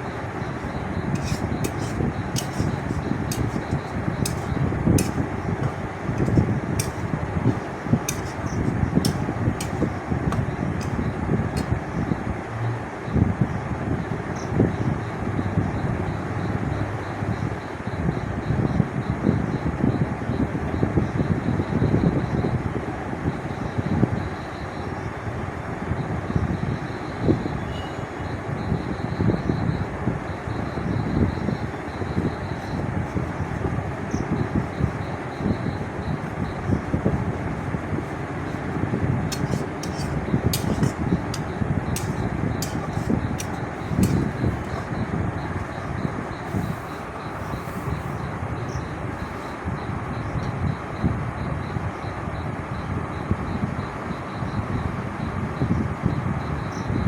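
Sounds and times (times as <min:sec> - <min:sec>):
masala frying: 0:00.0 - 0:12.0, 0:37.0 - 0:48.2
low rushing cooking noise: 0:00.0 - 0:12.2, 0:37.0 - 0:48.2
spatula tapping a pan: 0:01.2 - 0:11.8, 0:39.3 - 0:44.9.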